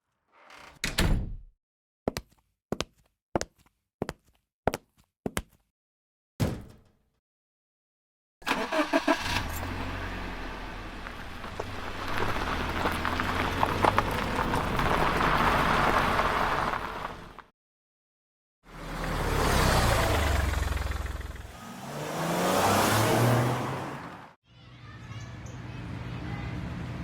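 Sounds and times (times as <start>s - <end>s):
car engine cranking and starting: 8.4s - 16.8s.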